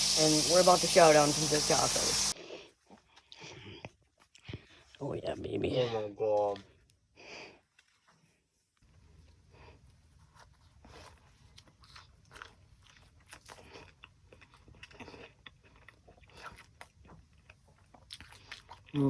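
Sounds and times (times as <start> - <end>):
person chewing crunchy food: 10.7 - 19.0.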